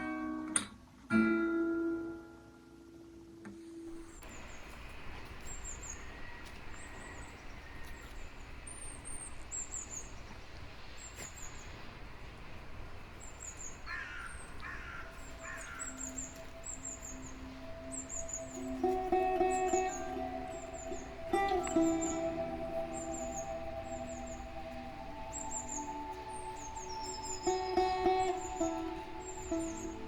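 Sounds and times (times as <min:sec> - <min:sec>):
birds chirping: 0:03.9 - 0:30.0
low outdoor rush: 0:03.9 - 0:30.0
crow cawing: 0:13.8 - 0:17.2.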